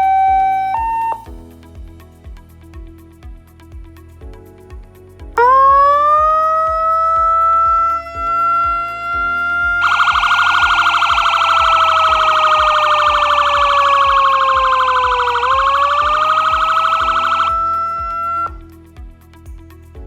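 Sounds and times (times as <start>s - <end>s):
rapidly pulsing siren tone: 0.0s - 1.3s, 5.4s - 18.6s
police siren wail: 9.8s - 18.6s.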